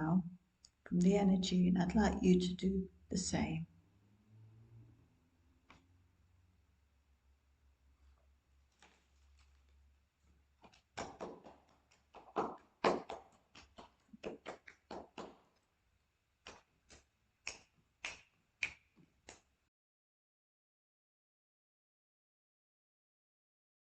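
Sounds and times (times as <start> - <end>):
sharp taps and clicks: 10.6 - 15.7.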